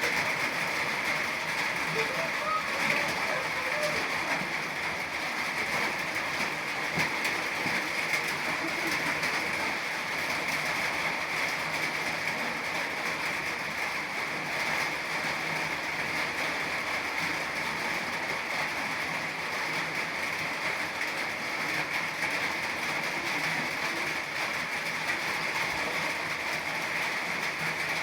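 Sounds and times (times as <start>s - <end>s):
steady rain hiss: 0.0s - 28.0s.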